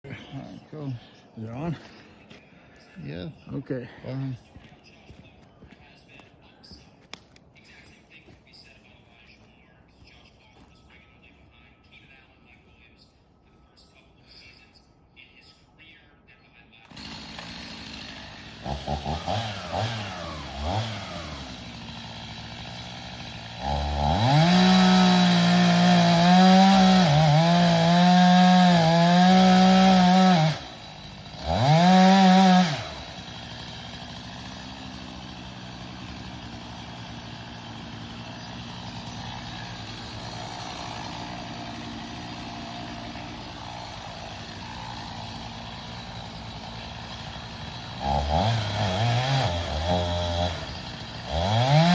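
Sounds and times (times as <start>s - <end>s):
chainsaw revving and idling: 16.8s - 51.9s.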